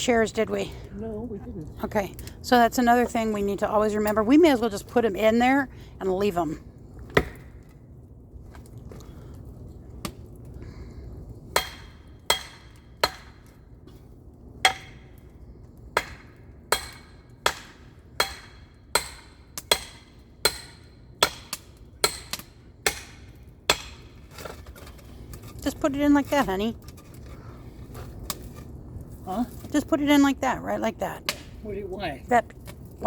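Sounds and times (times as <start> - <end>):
hatchet chopping firewood: 7.0 - 7.8, 11.5 - 28.7, 31.2 - 31.6.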